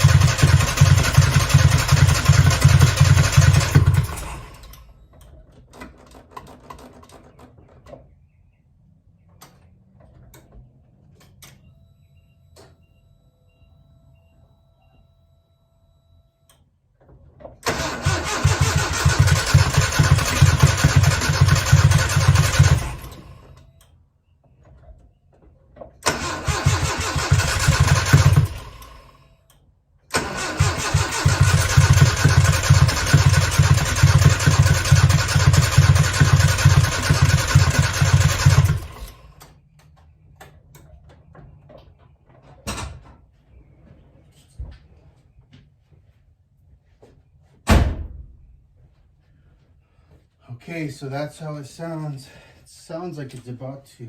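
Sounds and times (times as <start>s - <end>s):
engine cranking on the starter: 0.0s - 7.8s, 17.4s - 23.7s, 26.0s - 29.2s, 30.1s - 39.6s.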